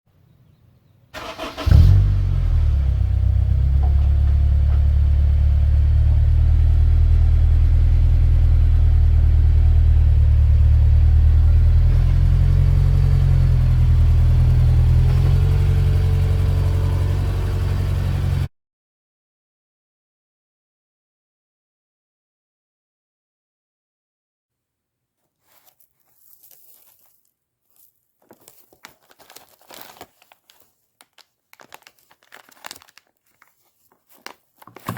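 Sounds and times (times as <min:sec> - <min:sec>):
car engine cranking: 0:01.2 - 0:05.2
car engine idling: 0:01.2 - 0:18.5.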